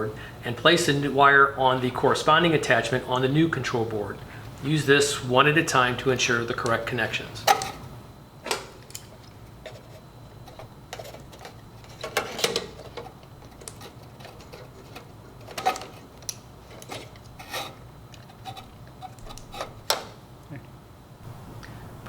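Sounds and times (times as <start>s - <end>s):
low steady hum: 0.0s - 22.0s
wire terminals clicking: 6.5s - 20.2s.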